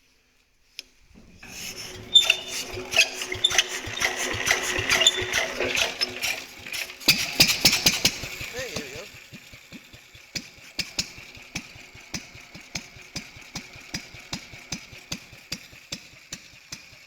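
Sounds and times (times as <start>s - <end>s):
stationary engine knocking: 1.4s - 17.0s.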